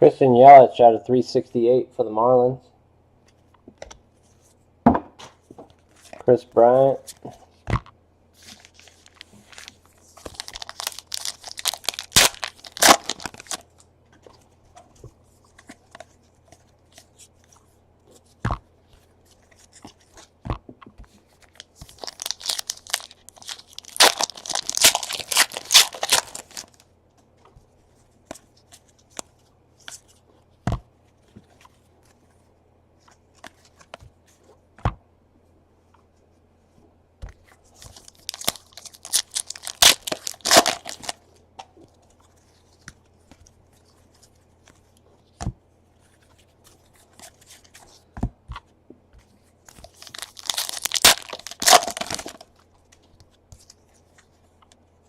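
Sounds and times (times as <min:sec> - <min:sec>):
card pack wrappers tearing: 0:08.4 - 0:13.8, 0:21.4 - 0:26.8, 0:37.8 - 0:41.2, 0:49.8 - 0:52.5.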